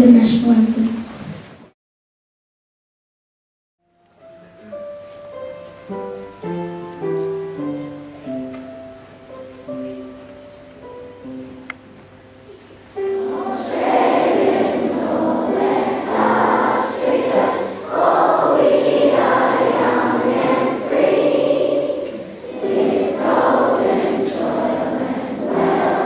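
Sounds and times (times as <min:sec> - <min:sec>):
instrumental accompaniment: 0:03.8 - 0:26.0
children singing: 0:13.0 - 0:26.0.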